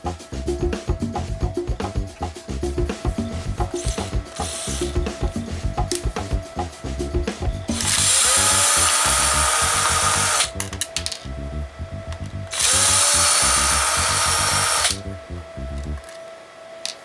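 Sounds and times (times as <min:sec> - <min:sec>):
background music with steady beat: 0:00.0 - 0:16.8
small power tool whining: 0:03.6 - 0:06.4, 0:07.6 - 0:10.8, 0:12.5 - 0:15.0.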